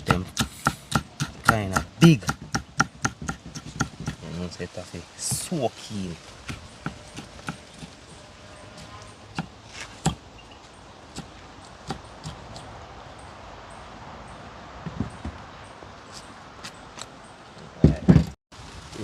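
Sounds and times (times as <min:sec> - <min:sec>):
steady outdoor hiss: 0:00.0 - 0:19.0.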